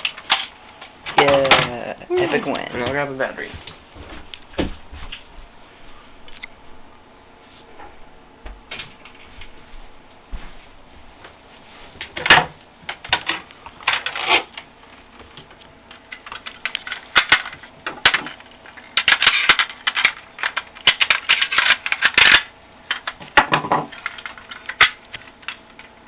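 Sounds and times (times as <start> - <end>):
crinkly rustles: 12.9 - 23.2, 23.9 - 26.0
small hard objects clicking: 16.1 - 26.0.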